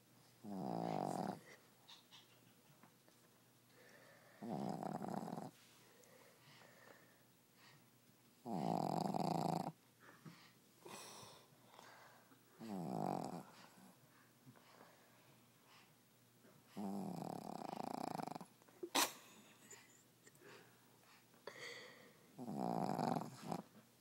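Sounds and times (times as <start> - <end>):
dog snoring: 0.4 - 1.6, 4.4 - 5.6, 8.4 - 9.8, 12.6 - 13.9, 16.7 - 18.5, 22.4 - 23.7.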